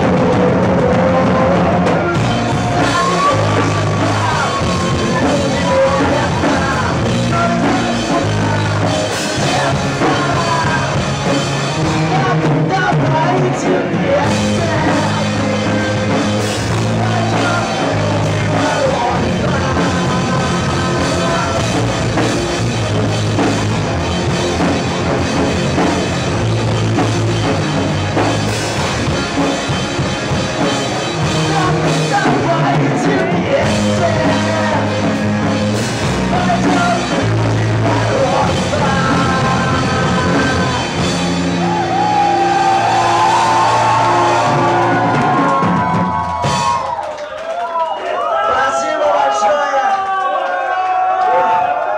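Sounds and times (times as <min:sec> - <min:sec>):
person singing: 0:00.0 - 0:22.6, 0:31.0 - 0:46.6
rock band playing live: 0:00.0 - 0:47.2.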